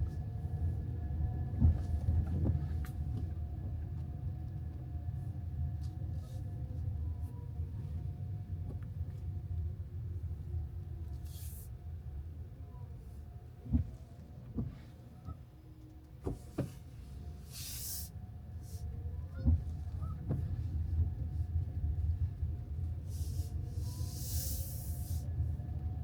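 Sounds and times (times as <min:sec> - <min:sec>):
car road rumble: 0:16.1 - 0:26.0.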